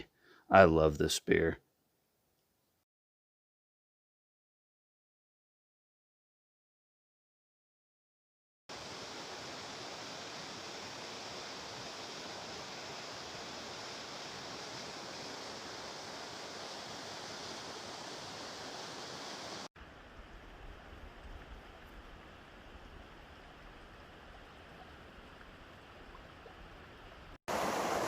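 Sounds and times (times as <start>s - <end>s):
steady hiss: 8.7s - 26.2s, 27.1s - 28.0s.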